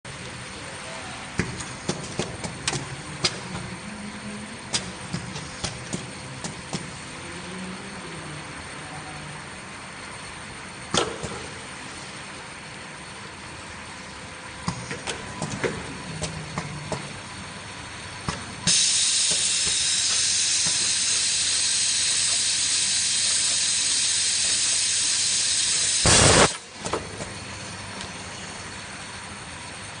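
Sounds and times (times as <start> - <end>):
machine steady high hiss: 18.6 - 26.7
short loud air blast: 18.7 - 23.9, 24.6 - 26.6.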